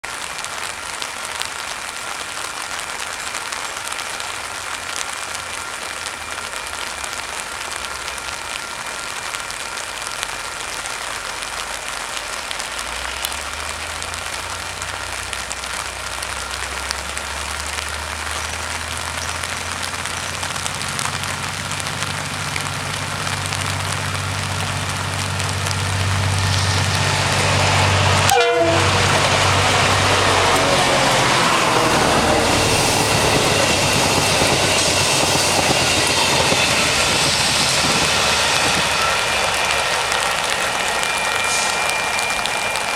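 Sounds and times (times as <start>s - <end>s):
steady rain hiss: 0.0s - 42.9s
diesel locomotive humming: 12.6s - 42.9s.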